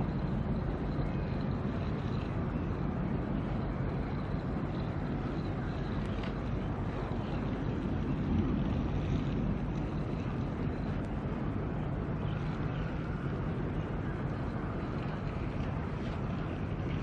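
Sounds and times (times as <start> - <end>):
steady low rumble: 0.0 - 17.0
wind noise on microphone: 0.0 - 17.0.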